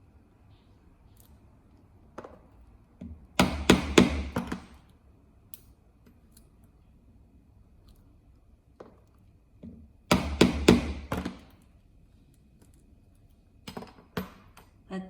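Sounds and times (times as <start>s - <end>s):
mallet striking chisel on leather: 3.4s - 4.7s, 10.1s - 11.5s.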